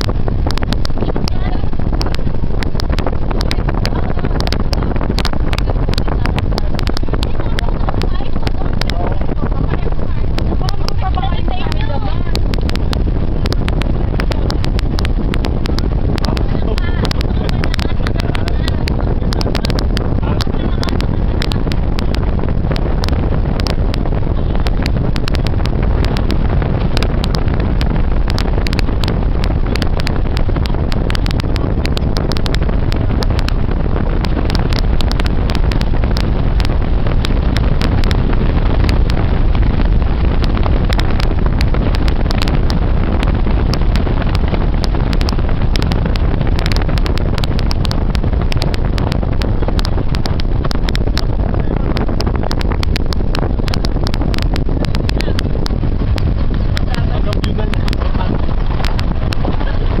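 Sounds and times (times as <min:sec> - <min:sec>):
vehicle engine and road rumble: 0:00.0 - 1:00.0
wind buffeting microphone: 0:00.0 - 1:00.0.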